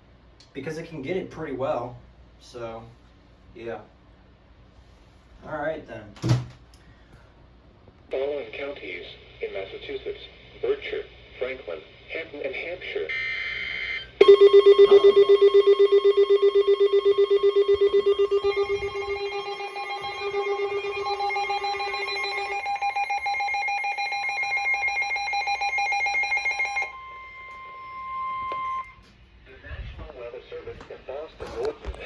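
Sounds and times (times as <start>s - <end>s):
rapidly pulsing alarm tone: 13.1s - 29.0s
steady warning tone: 13.1s - 29.2s
higher pulsing alarm: 13.2s - 29.1s.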